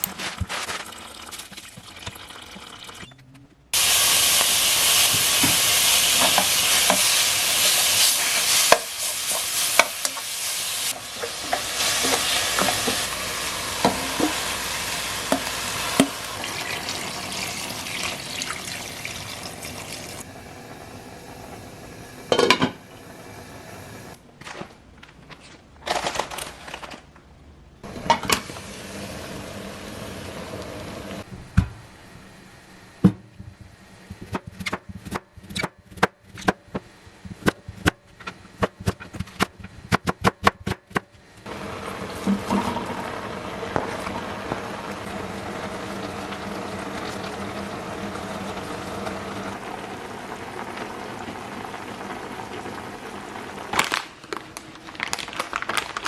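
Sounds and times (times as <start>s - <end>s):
long steady hiss: 3.8s - 24.2s
steady low hum: 29.2s - 39.9s.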